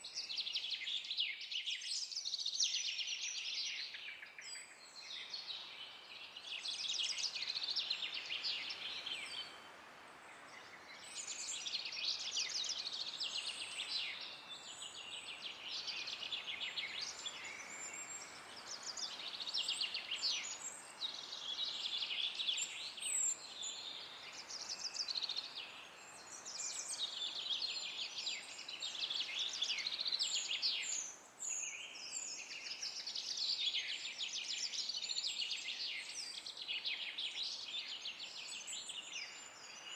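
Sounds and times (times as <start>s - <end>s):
wind hiss: 5.1s - 34.0s.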